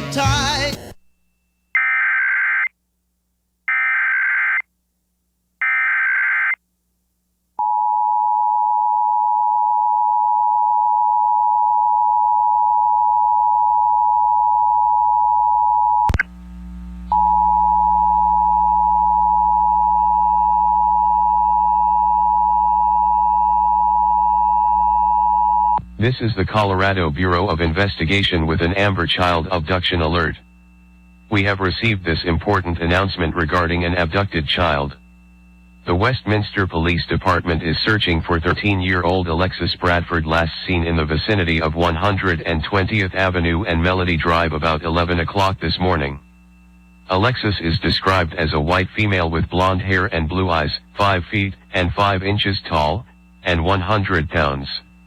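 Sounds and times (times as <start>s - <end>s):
low hum: 7.1s - 55.0s
click: 16.1s - 16.3s.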